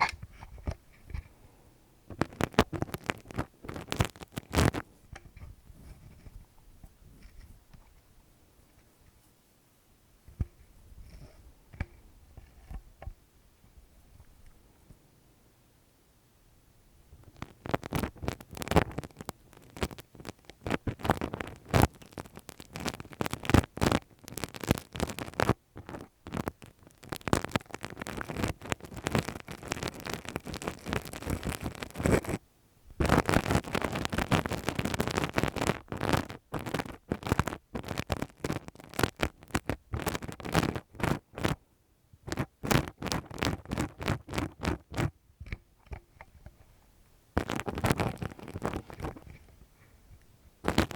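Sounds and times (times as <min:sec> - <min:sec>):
tool scratching on microphone: 0:00.0 - 0:01.3, 0:02.2 - 0:06.5.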